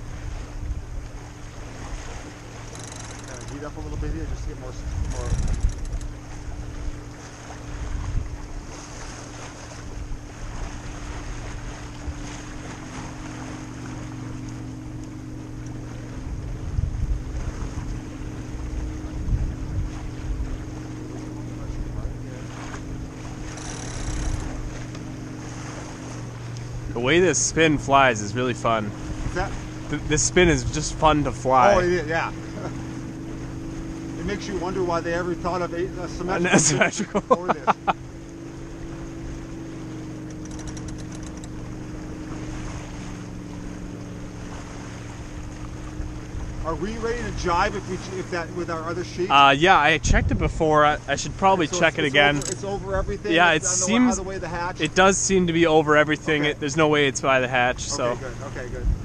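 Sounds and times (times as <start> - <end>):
wind buffeting microphone: 0.0 - 2.6, 3.3 - 23.6, 28.8 - 36.3, 38.6 - 56.7, 58.1 - 59.0
steady low hum: 0.0 - 59.0
water moving past hull: 0.0 - 59.0
quick light ticks: 2.6 - 3.6, 5.0 - 6.2, 14.4 - 15.8, 40.2 - 41.7, 52.3 - 52.7.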